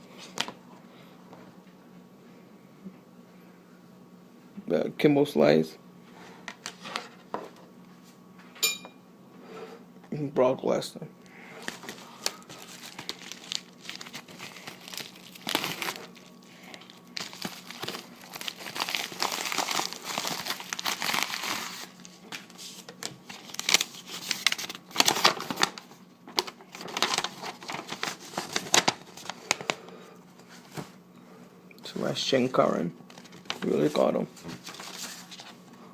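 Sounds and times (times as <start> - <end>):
packaging crinkling and rustling: 11.6 - 29.8, 33.0 - 35.6.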